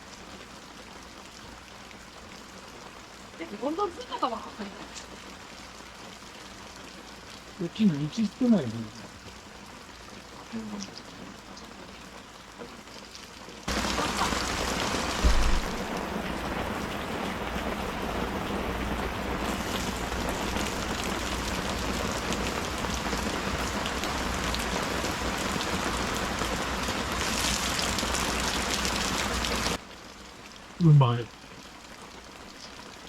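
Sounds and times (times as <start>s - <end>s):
steady rain falling: 0.0s - 33.0s
low thump: 15.2s - 15.9s.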